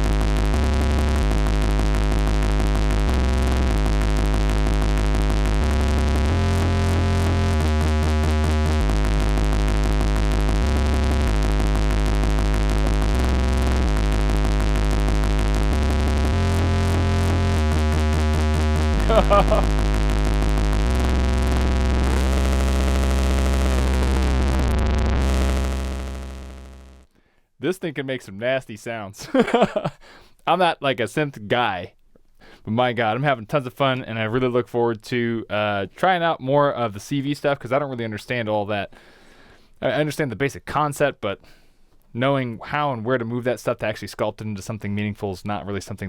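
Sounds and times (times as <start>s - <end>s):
high synth squelch: 0.0s - 27.0s
synthesizer bass line: 0.0s - 27.1s.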